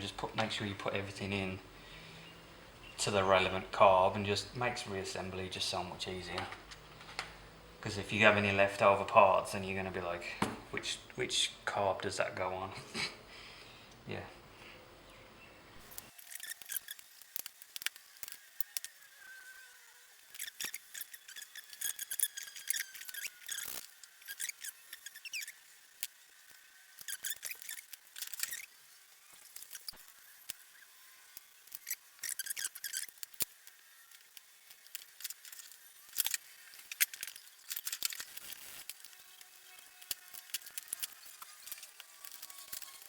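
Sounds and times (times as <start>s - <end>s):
metal parts clicking and clinking: 31.6s - 43.0s.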